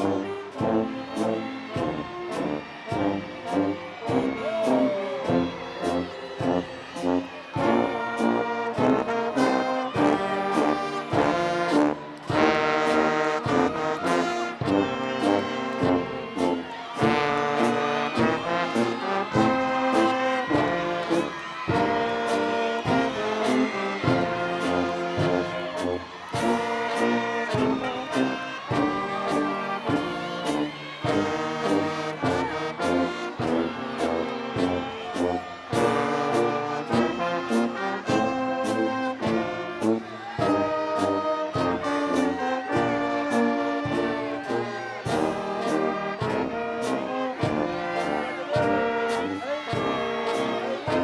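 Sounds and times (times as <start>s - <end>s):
brass band playing: 0.0s - 51.0s.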